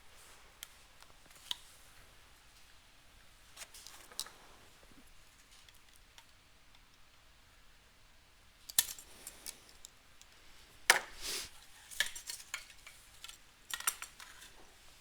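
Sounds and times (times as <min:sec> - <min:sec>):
rustling scrape: 0:11.1 - 0:11.6.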